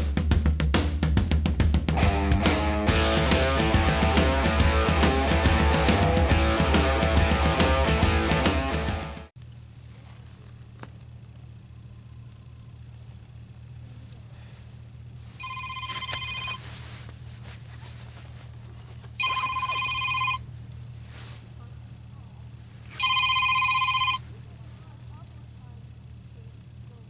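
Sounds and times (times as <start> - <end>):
steady low hum: 2.0 - 27.0
telephone ringing: 15.4 - 16.6, 19.2 - 20.5, 22.9 - 24.2.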